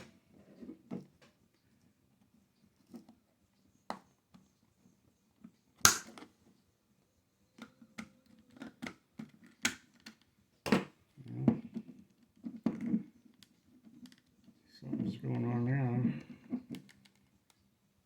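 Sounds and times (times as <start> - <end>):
plastic controller clicks and taps: 5.8 - 6.3.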